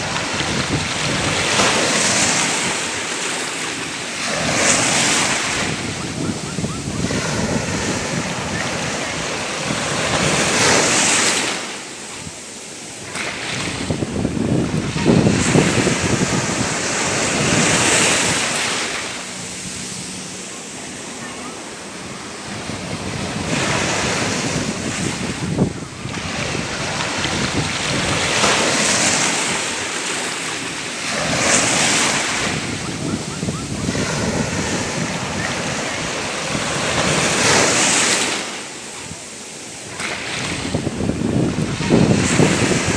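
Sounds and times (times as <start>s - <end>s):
sharp wave splash: 0.0s - 39.1s
ocean waves breaking: 0.0s - 42.9s.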